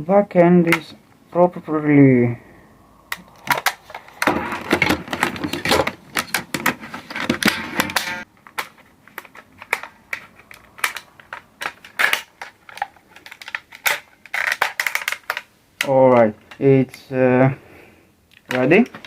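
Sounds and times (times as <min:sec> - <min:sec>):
parts scraping and rattling: 0:03.1 - 0:15.5
plastic and metal clicks: 0:03.1 - 0:16.6.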